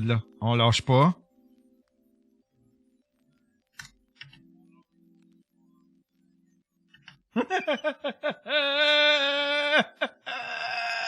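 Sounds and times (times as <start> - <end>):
man laughing: 7.4 - 11.0.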